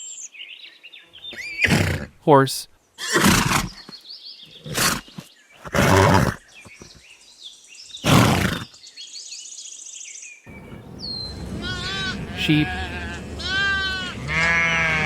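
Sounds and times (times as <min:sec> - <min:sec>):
horse snorting: 0:05.6 - 0:06.4, 0:08.0 - 0:08.7, 0:10.5 - 0:15.0
birds chirping faintly: 0:10.5 - 0:15.0.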